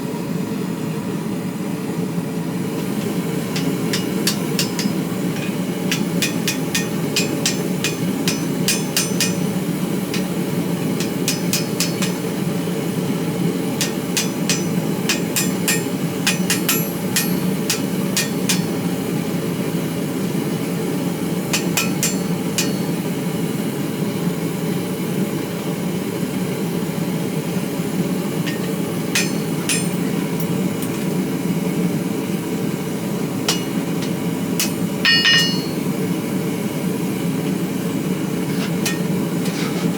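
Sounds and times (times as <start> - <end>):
hammer striking steel on anvil: 2.8 - 13.0, 13.6 - 19.2, 21.4 - 23.3, 28.3 - 31.2, 33.0 - 36.1, 38.5 - 39.8.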